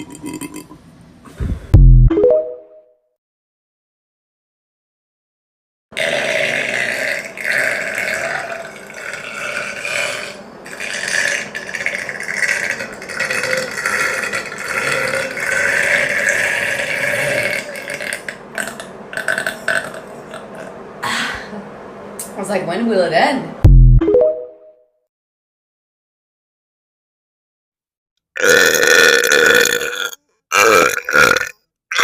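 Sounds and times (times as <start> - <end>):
girl burping: 28.4 - 32.0.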